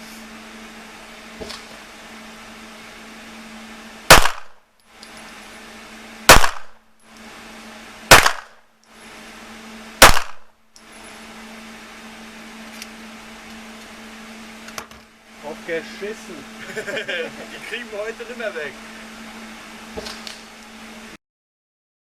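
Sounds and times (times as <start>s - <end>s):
handgun shots echoing: 4.1s - 4.6s, 6.3s - 6.8s, 8.1s - 8.6s, 10.0s - 10.5s.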